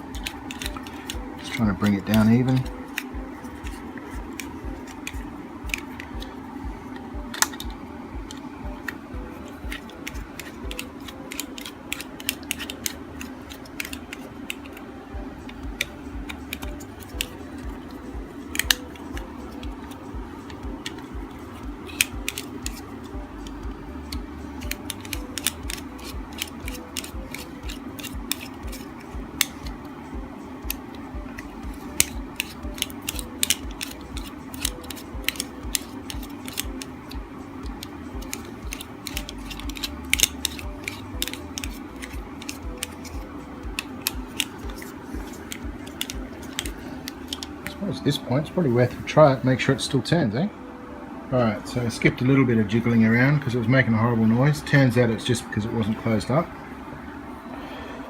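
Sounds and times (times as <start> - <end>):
steady low hum: 0.0 - 58.0
metallic tool clicks and taps: 9.7 - 14.8, 15.5 - 22.8, 23.5 - 29.8, 30.6 - 47.8.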